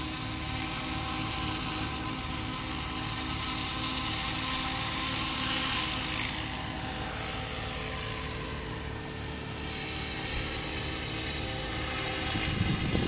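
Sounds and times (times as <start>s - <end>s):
model helicopter rotor whine: 0.0s - 13.0s
wind buffeting microphone: 11.9s - 13.0s.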